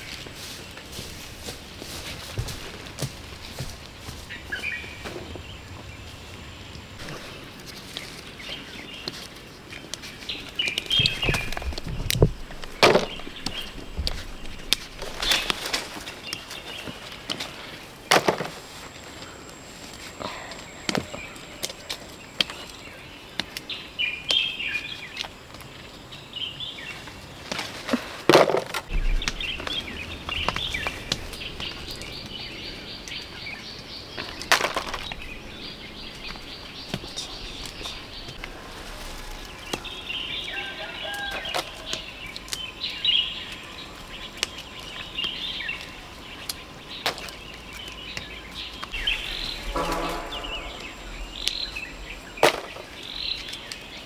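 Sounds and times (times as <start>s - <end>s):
small birds chirping: 0.0s - 18.2s, 28.9s - 54.0s.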